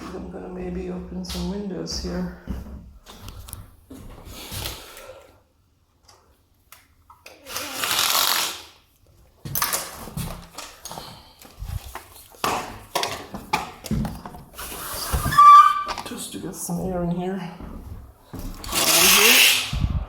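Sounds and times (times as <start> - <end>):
window scraping open: 14.6 - 16.0.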